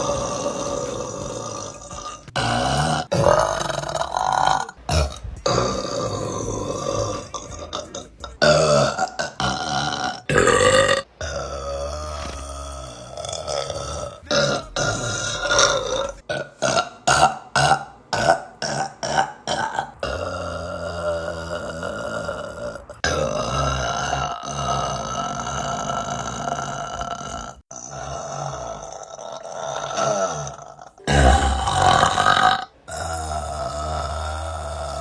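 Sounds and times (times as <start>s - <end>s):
young woman burping: 0.0s - 35.0s.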